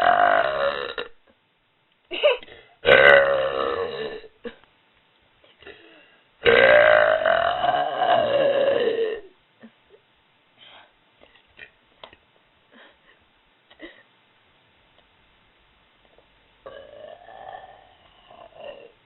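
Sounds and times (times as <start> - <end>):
person burping: 0.0 - 1.3, 2.4 - 4.6, 5.6 - 9.8, 16.6 - 19.0.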